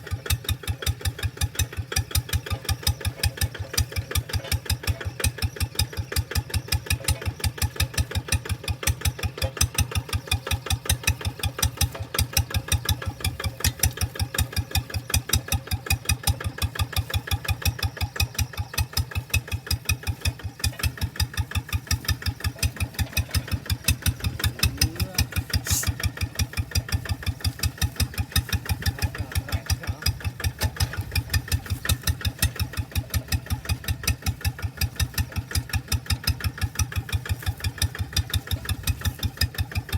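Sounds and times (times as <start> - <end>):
tractor engine idling: 0.0 - 39.9.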